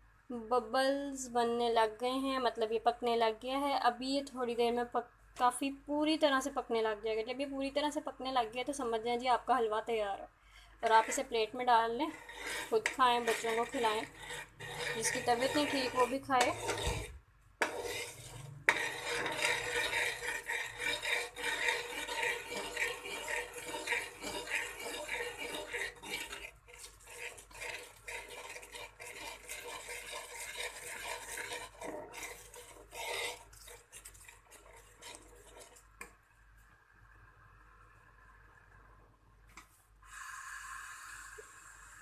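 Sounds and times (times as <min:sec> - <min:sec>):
spoon scraping cooking pan: 0:10.8 - 0:36.2
food bubbling: 0:12.0 - 0:36.2.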